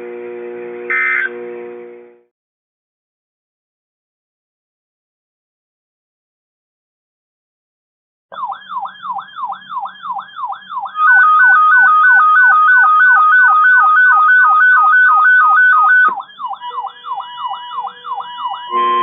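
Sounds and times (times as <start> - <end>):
two-tone warbling alarm: 0.0 - 1.9, 8.3 - 19.0.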